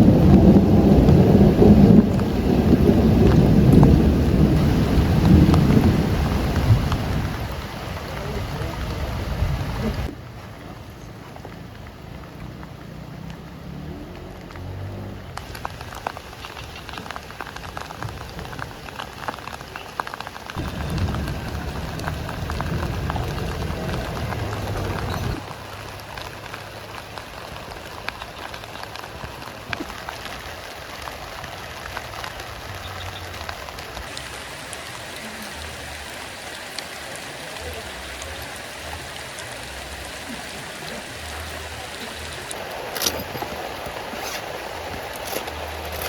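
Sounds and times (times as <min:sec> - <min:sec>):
rain pattering: 0:00.0 - 0:46.0
low rumble: 0:20.6 - 0:25.4.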